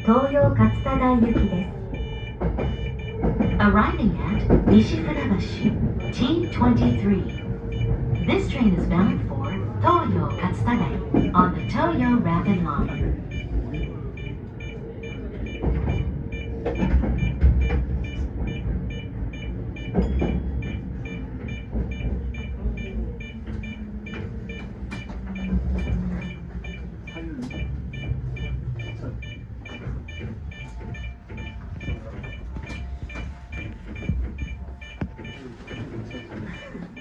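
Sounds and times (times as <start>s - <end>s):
train motor whine: 0.0s - 37.0s
train wheels rumbling on rails: 0.0s - 37.0s
clicks over the track: 0.3s - 37.0s.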